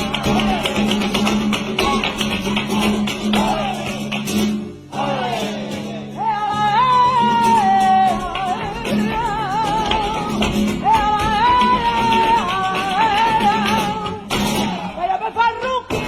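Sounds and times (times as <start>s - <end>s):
plucked guitar: 0.0s - 16.0s.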